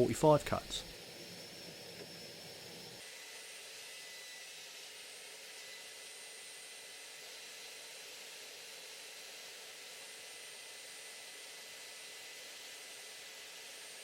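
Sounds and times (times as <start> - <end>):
faint high whine tones: 0.0 - 3.1.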